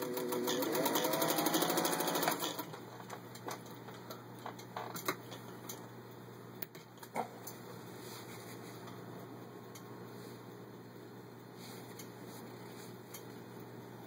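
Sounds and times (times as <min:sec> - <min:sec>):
sewing machine running: 0:00.0 - 0:02.8.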